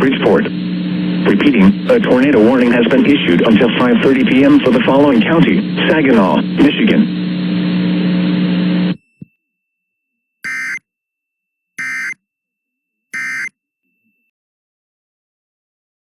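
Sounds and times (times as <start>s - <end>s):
broadcast hiss and hum: 0.0s - 9.0s
buzzy digital data tones: 10.4s - 10.8s, 11.8s - 12.2s, 13.2s - 13.5s.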